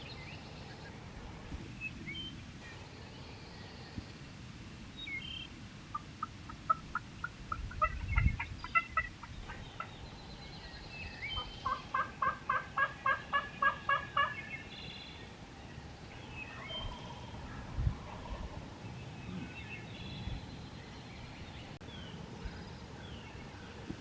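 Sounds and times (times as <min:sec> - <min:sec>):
faint songbird chirps: 0:00.0 - 0:24.0
turkey yelps: 0:11.4 - 0:14.4.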